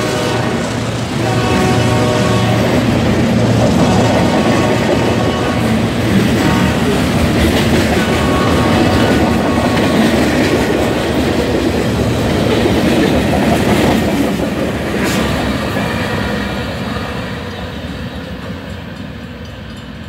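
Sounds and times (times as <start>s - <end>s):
freight train rumble: 0.0s - 20.0s
train wheels clattering on rail joints: 0.6s - 16.8s, 17.4s - 20.0s.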